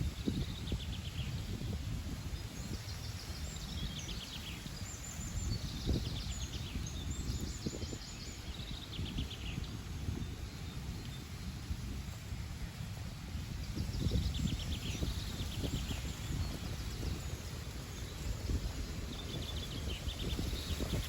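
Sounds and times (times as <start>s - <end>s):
songbirds trilling: 0.0s - 21.0s.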